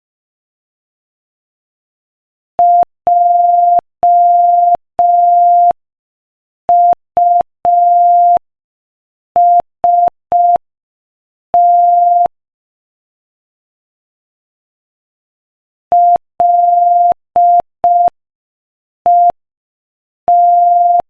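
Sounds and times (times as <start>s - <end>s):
morse code beeps: 6.7s - 8.4s, 11.6s - 12.3s, 16.0s - 18.1s, 20.3s - 21.0s.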